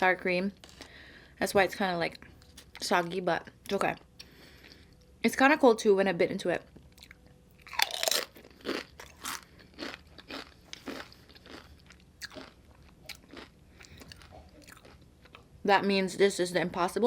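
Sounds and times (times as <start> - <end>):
crisp crunchy chewing: 7.0 - 15.5.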